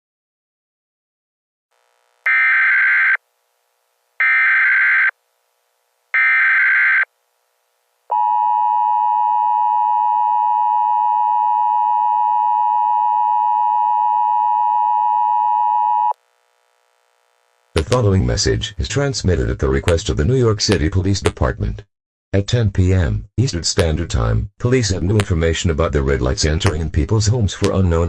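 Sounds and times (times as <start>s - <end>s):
data burst screech: 2.3s - 3.2s.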